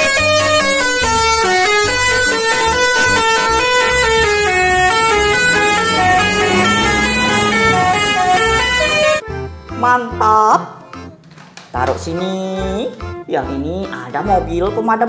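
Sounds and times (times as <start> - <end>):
electronic tune with buzzy notes: 1.3 - 9.2.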